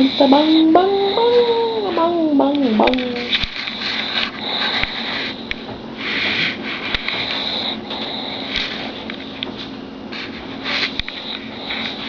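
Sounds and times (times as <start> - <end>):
dog snoring: 0.0 - 9.1.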